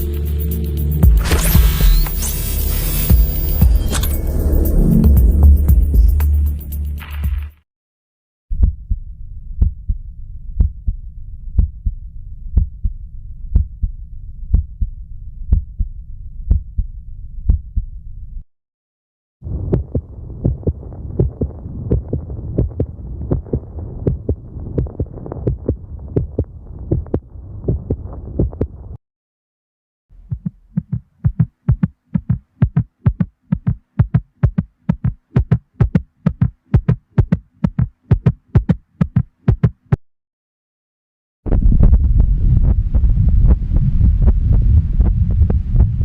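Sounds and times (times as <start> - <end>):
heartbeat through stethoscope: 8.5 - 10.0, 10.6 - 17.9, 19.4 - 29.0, 30.2 - 40.0, 41.5 - 46.0
steady rumble: 8.6 - 18.4, 19.4 - 29.0, 41.5 - 46.0.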